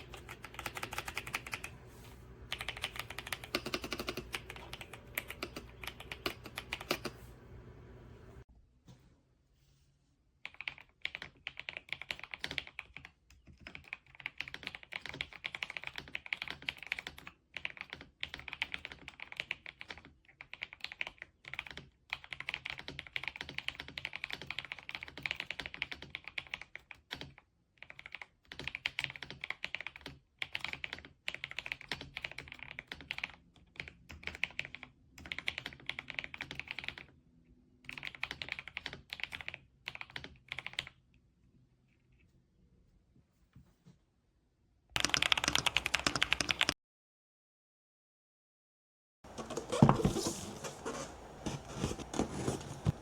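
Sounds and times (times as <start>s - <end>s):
mechanical keyboard typing: 0.0s - 1.8s, 2.5s - 7.3s, 10.5s - 37.1s, 37.9s - 41.0s, 45.0s - 46.8s.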